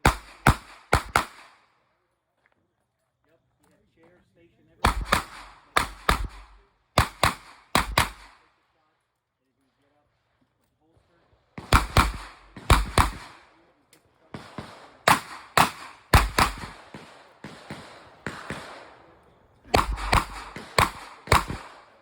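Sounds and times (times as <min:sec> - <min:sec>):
distant gunshot cracks: 0:00.0 - 0:01.6, 0:04.8 - 0:08.4, 0:11.6 - 0:13.4, 0:14.4 - 0:19.1, 0:19.7 - 0:22.0
revolver gunshots: 0:00.0 - 0:01.6, 0:04.8 - 0:08.4, 0:11.6 - 0:13.6, 0:14.3 - 0:22.0.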